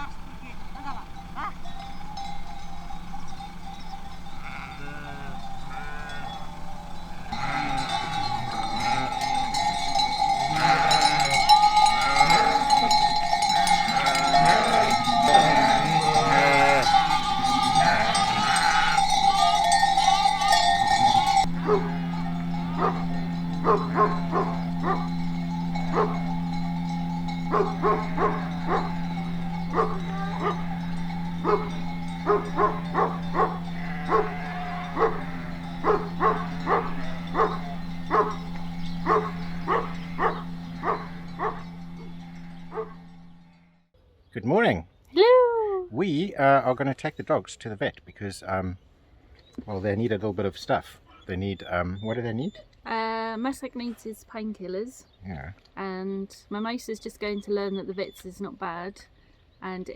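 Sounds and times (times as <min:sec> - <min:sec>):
sheep bleating: 0:00.0 - 0:02.3, 0:03.7 - 0:42.1
low steady hum: 0:00.0 - 0:43.7
sheep bells clanking: 0:00.0 - 0:43.8.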